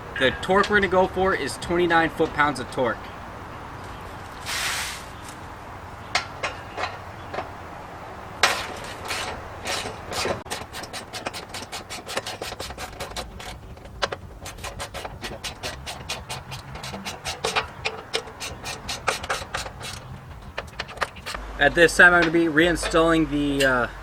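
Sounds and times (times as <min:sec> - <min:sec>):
knocks and scrapes: 0:08.4 - 0:23.9.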